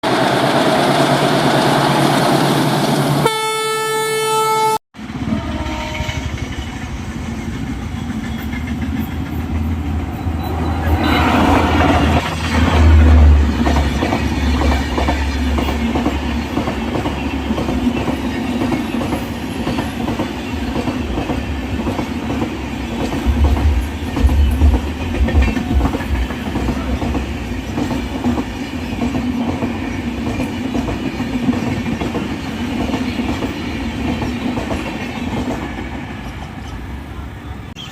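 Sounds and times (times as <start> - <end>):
train rumbling past: 0.0 - 3.5, 5.0 - 37.9
train horn: 3.2 - 6.4.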